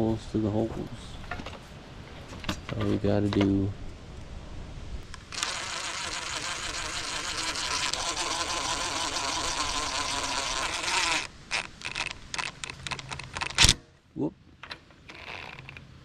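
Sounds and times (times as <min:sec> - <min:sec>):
cordless impact driver buzzing: 0:05.2 - 0:13.8.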